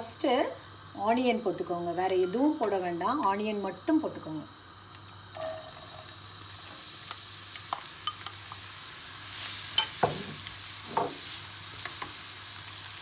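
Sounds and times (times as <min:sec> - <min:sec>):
onions sizzling in oil: 0:00.0 - 0:13.0
spoon clinking and scraping pan: 0:09.7 - 0:10.3.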